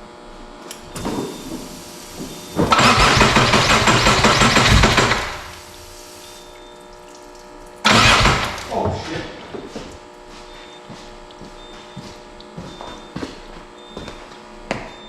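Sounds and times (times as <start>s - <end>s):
car engine starting: 0.8s - 6.4s, 7.8s - 9.0s.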